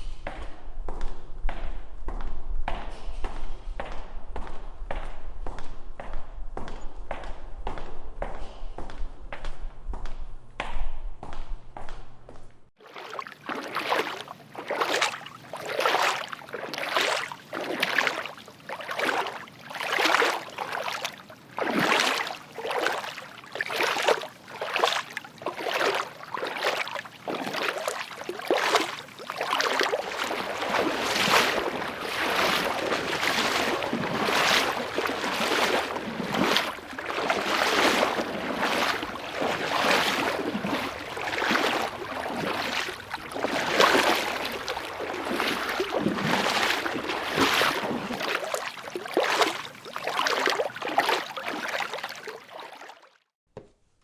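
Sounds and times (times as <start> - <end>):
footsteps splashing in water: 12.7 - 53.4
water sloshing: 12.8 - 53.3.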